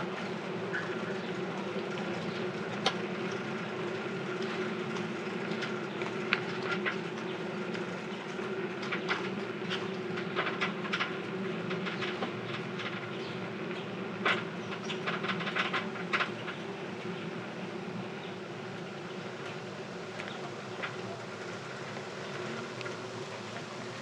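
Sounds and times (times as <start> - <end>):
bicycle rattling and clicking: 0.1 - 24.0.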